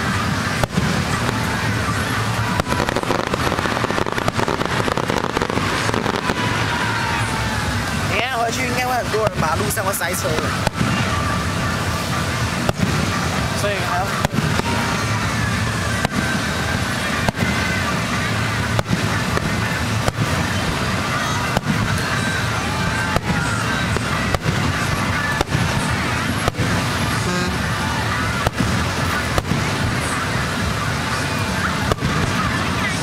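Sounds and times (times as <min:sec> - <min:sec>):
crowd noise: 0:00.0 - 0:33.0
fireworks bangs: 0:00.0 - 0:33.0.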